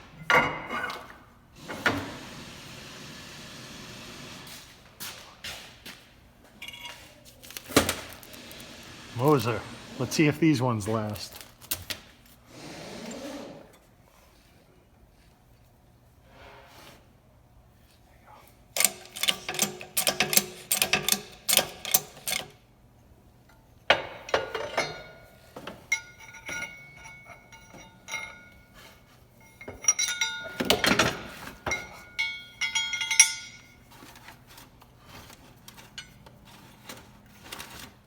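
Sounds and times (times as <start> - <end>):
metal tools clinking: 6.6 - 11.5, 24.3 - 37.8.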